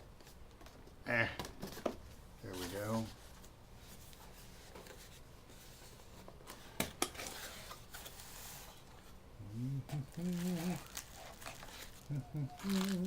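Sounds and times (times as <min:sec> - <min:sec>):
packaging rustling: 0:09.9 - 0:13.0.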